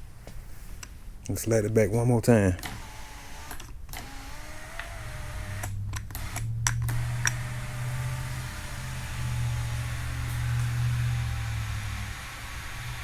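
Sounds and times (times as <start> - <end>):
sunroof motor humming: 2.6 - 13.0
switch and mechanism clicks: 5.6 - 7.5.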